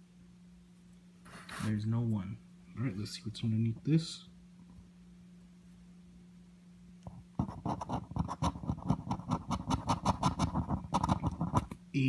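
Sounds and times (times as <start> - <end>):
scratch ticket being scraped: 7.4 - 11.7.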